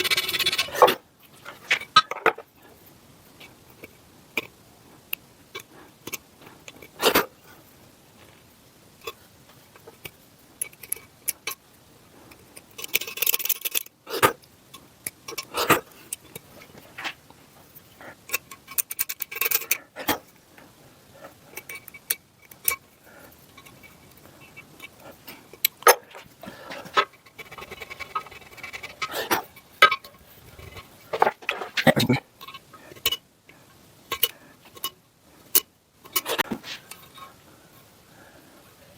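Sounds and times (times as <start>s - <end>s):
metal tools clicking and tapping: 0.0s - 2.4s, 9.8s - 11.7s, 12.3s - 20.4s, 21.5s - 37.3s.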